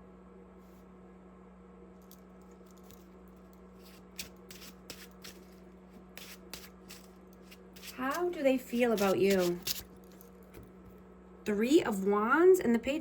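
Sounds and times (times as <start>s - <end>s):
faint steady hum: 0.0s - 13.0s
cards being shuffled: 3.8s - 10.3s.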